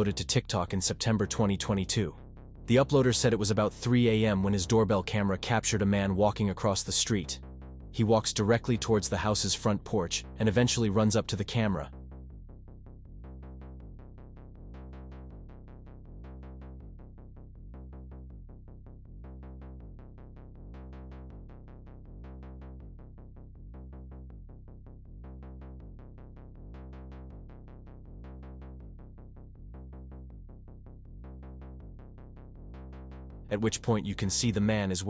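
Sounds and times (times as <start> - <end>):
dark synth music: 0.0 - 35.0
low pulsing bass: 0.0 - 35.0.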